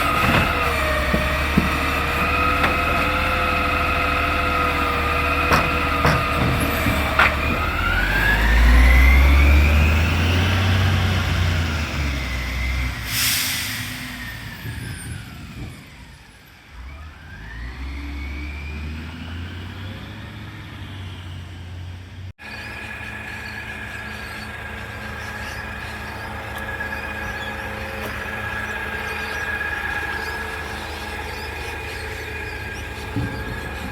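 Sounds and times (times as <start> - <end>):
truck diesel engine revving: 0.0 - 33.9
air hiss: 13.0 - 14.2.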